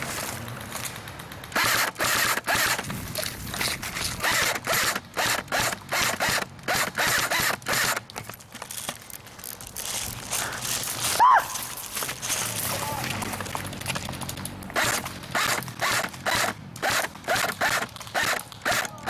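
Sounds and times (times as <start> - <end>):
airsoft gun firing bursts: 1.0 - 2.9, 4.2 - 8.1, 14.7 - 19.0.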